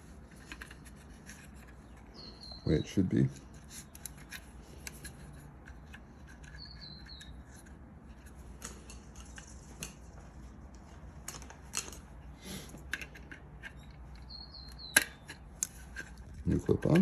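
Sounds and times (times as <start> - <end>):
plastic and metal parts clicking: 3.3 - 10.0.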